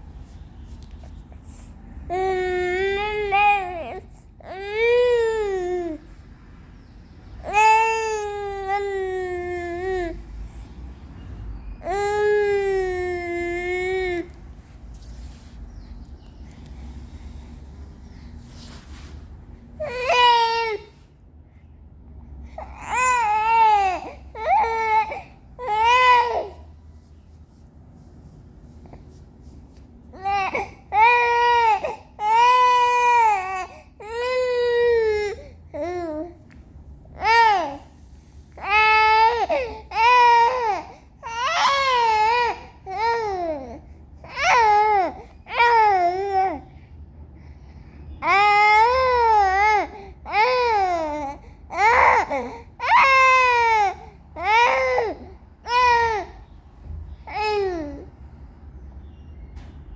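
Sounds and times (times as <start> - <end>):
baby crying: 22.6 - 26.6.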